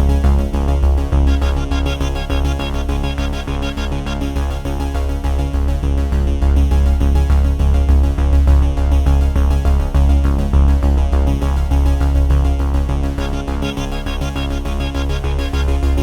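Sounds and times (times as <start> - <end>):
electronic synthesizer music: 0.0 - 5.5, 13.0 - 16.0.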